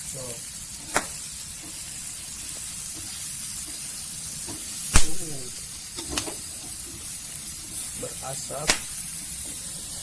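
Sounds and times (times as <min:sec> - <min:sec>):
insects sizzling in a wok: 0:00.0 - 0:10.0
sharp knock: 0:05.0 - 0:05.2.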